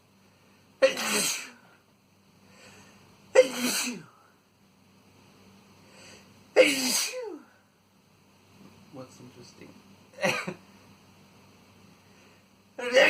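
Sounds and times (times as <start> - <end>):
man sneezing: 0.8 - 1.7, 3.3 - 4.2, 6.6 - 7.6.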